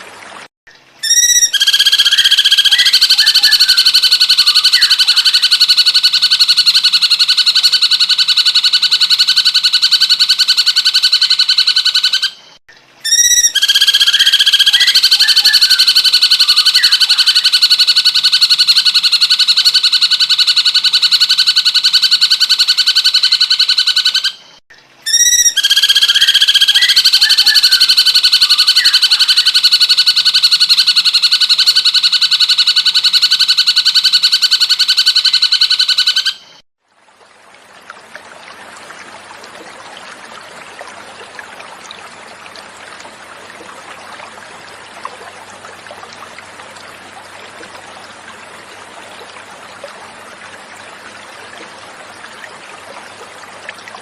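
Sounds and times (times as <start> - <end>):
bird song with buzzing trill: 1.0 - 5.5, 13.0 - 17.4, 23.2 - 29.5
rising bird chirps: 1.0 - 5.5, 11.2 - 17.4, 23.1 - 29.5.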